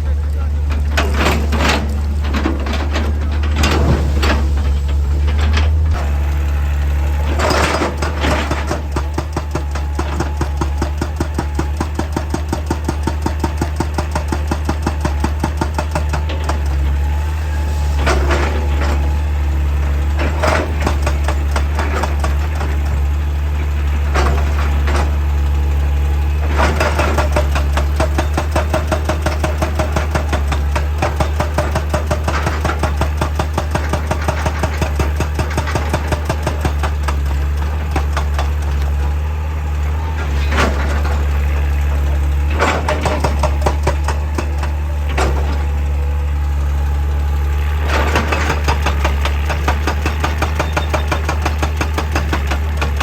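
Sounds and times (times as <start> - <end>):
heavy machine engine droning: 0.0 - 53.0
clunks or scrapes: 0.7 - 6.2, 39.8 - 45.9.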